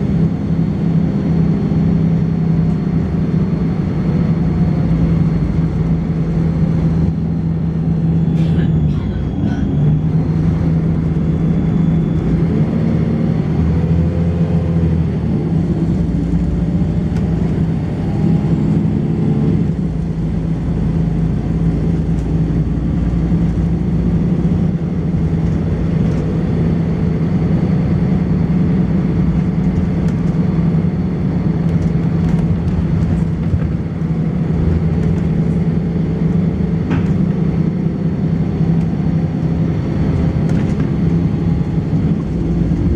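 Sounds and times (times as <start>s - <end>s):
bus engine running: 0.0s - 42.9s.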